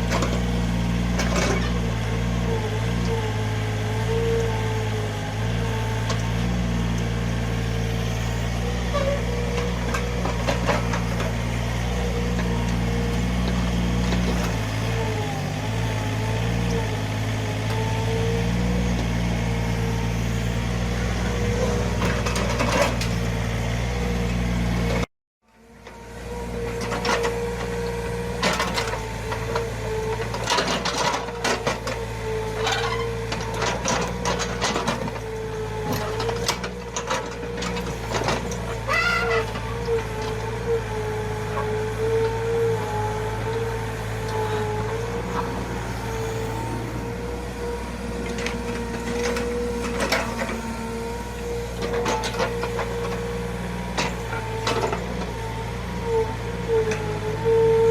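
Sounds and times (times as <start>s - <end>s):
excavator engine running: 0.0s - 57.9s
short squeal: 8.2s - 9.4s, 38.7s - 39.7s
excavator bucket clanking: 35.9s - 40.4s
wavering hydraulic whine: 38.6s - 55.3s.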